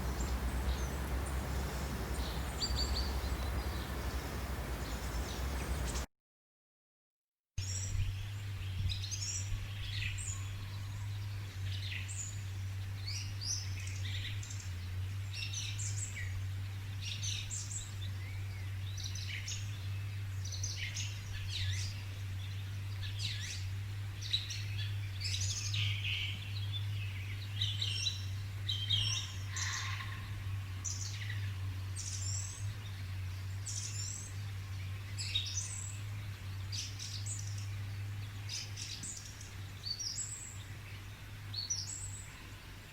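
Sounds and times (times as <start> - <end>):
birds chirping and singing: 0.0 - 6.0, 24.2 - 42.9
steady low hum: 0.0 - 6.1.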